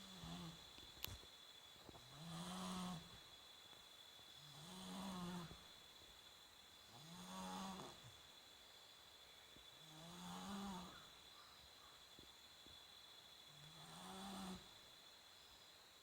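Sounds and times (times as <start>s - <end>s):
person snoring: 4.6s - 5.6s, 7.0s - 8.0s, 9.9s - 10.9s, 13.8s - 14.6s.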